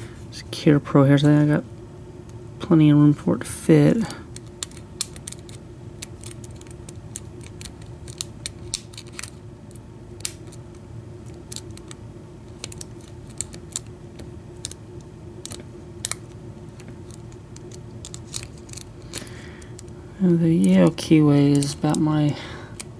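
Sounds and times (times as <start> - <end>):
low steady hum: 0.0 - 22.9.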